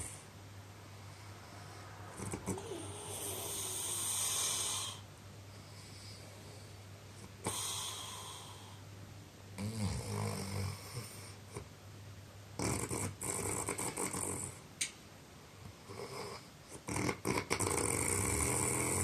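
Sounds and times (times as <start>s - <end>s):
raspy rattling snoring: 2.2s - 5.0s, 12.6s - 14.6s, 15.9s - 19.0s.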